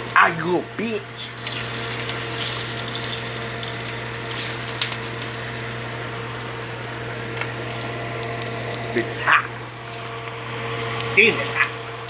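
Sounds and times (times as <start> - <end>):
sausages hissing: 0.0 - 12.0.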